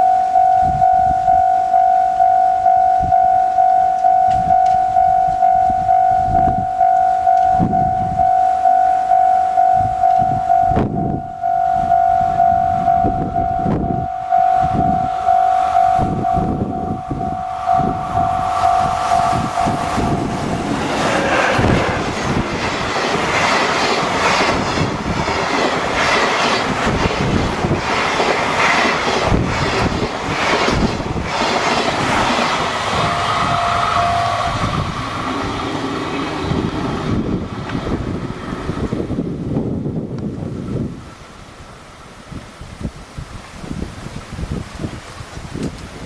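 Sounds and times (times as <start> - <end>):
level-crossing warning bell: 0.0 - 39.2
train passing: 0.0 - 42.3
wheels clattering over rail joints: 20.2 - 39.0.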